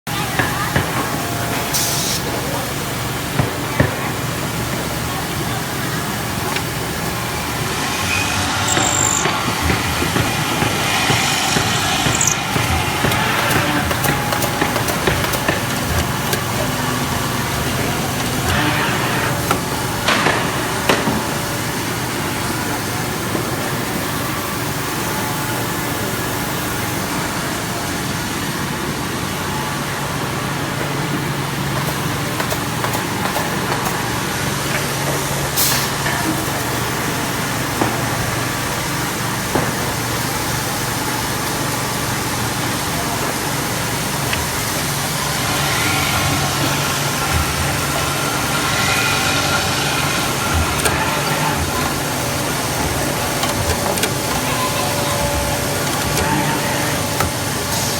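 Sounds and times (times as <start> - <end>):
woodworking machinery humming: 0.1 - 57.9
sharp machine clicks: 8.5 - 18.7.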